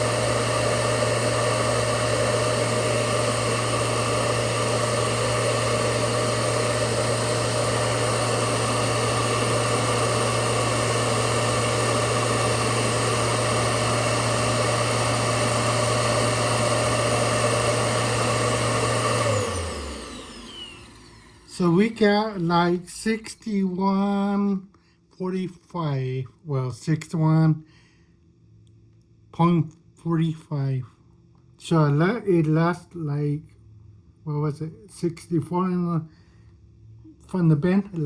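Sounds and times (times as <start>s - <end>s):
vacuum cleaner motor running: 0.0s - 22.6s.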